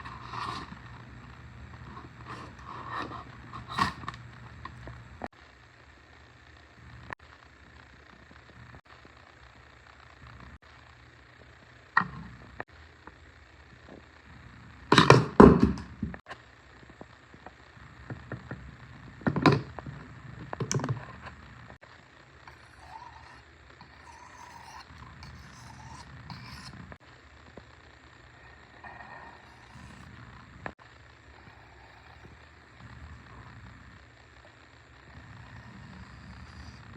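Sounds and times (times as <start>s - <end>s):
knife blade scraping sharpening stone: 24.0s - 26.8s.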